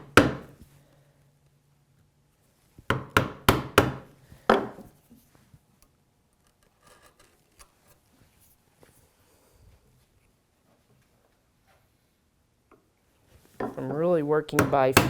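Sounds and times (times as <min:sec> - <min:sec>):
chisel struck into wood: 0:00.0 - 0:00.5, 0:02.9 - 0:04.8, 0:14.6 - 0:15.0.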